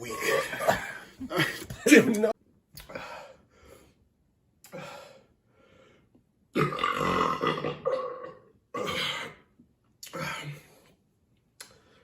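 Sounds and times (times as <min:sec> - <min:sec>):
man burping loudly: 0:06.5 - 0:09.4.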